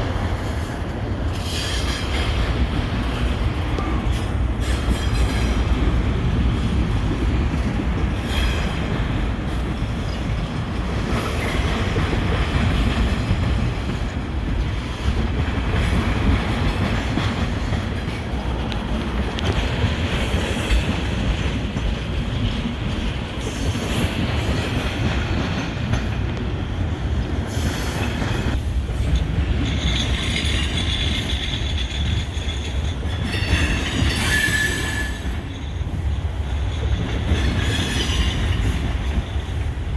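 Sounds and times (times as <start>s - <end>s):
train wheels rumbling on rails: 0.0s - 39.9s
wheels clickety-clack: 0.0s - 39.9s
wheel flanges squealing: 29.8s - 39.6s.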